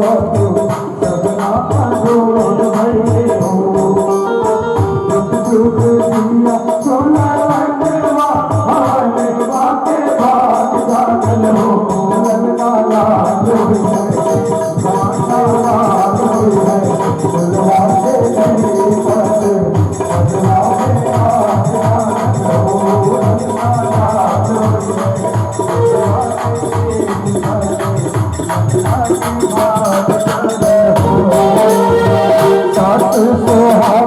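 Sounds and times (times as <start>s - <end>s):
hand drum beats: 0.0s - 34.0s
jingling percussion: 0.0s - 34.0s
keyboard playing held notes: 4.0s - 6.4s, 22.5s - 27.7s, 30.8s - 34.0s.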